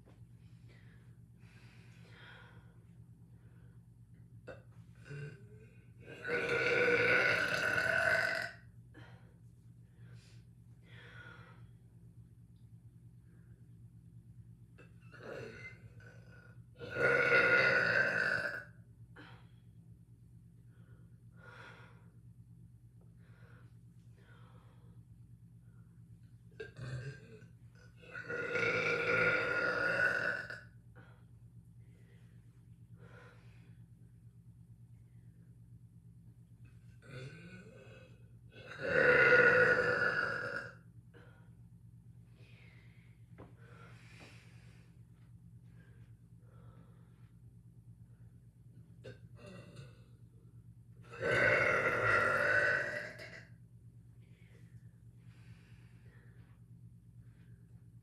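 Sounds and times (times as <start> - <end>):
person burping: 6.0 - 8.6, 15.1 - 16.2, 16.8 - 18.7, 26.6 - 30.6, 37.0 - 40.8, 49.0 - 50.0, 51.1 - 53.5.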